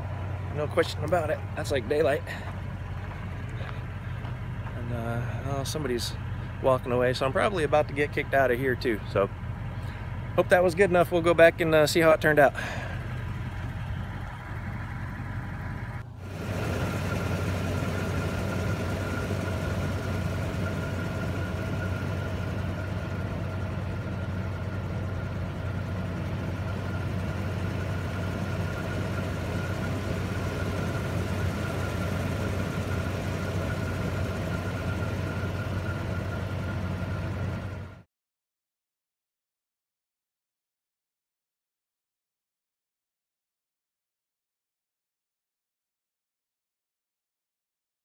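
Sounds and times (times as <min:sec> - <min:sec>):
pickup engine running: 0:00.0 - 0:38.0.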